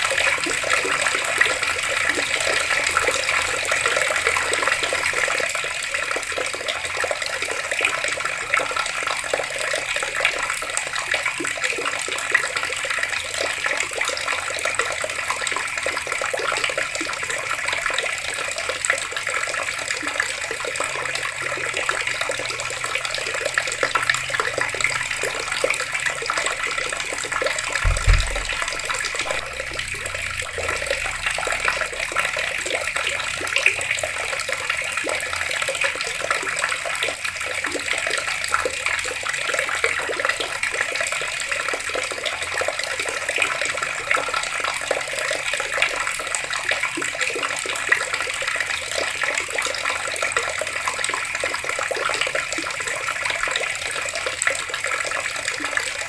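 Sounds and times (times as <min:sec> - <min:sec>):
water running from taps: 0:00.0 - 0:56.0
low thump: 0:27.8 - 0:30.8.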